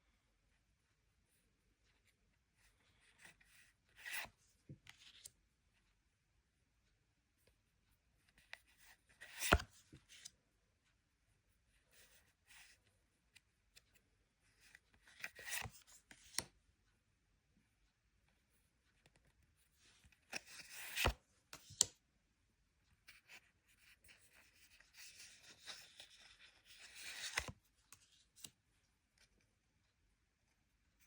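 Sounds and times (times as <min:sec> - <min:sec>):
cards and packaging rustling: 0:24.7 - 0:28.4.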